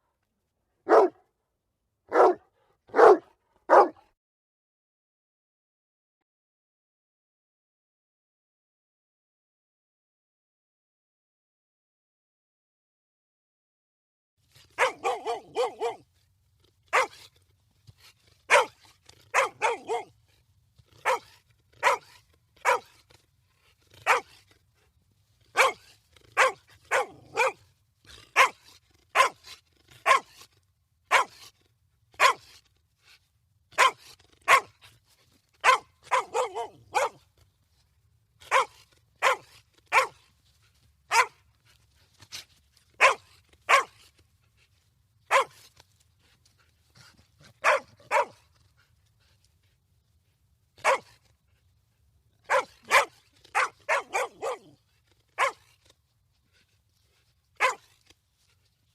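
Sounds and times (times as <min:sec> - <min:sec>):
dog barking: 0:00.8 - 0:01.2, 0:02.1 - 0:04.0, 0:14.8 - 0:16.0, 0:16.9 - 0:17.2, 0:18.5 - 0:20.1, 0:21.0 - 0:22.9, 0:24.0 - 0:24.3, 0:25.6 - 0:27.6, 0:28.4 - 0:29.4, 0:30.0 - 0:30.4, 0:31.1 - 0:31.4, 0:32.2 - 0:32.5, 0:33.8 - 0:34.7, 0:35.6 - 0:37.2, 0:38.4 - 0:40.2, 0:41.1 - 0:41.4, 0:43.0 - 0:44.0, 0:45.3 - 0:45.6, 0:47.6 - 0:48.4, 0:50.8 - 0:51.2, 0:52.4 - 0:54.8, 0:55.4 - 0:55.6, 0:57.6 - 0:57.9.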